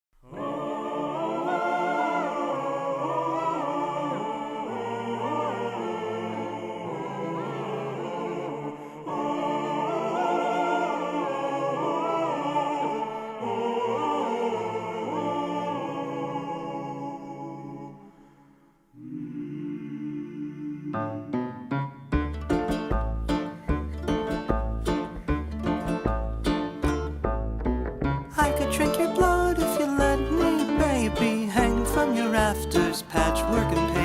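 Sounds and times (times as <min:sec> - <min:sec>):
choir-like melodic lines: 0:00.2 - 0:27.3, 0:28.2 - 0:34.0
low held bass notes: 0:22.1 - 0:34.0.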